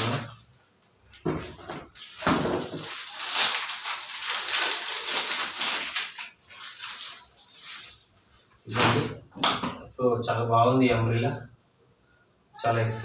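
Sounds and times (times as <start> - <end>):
packaging rustling and crinkling: 0.0 - 8.8.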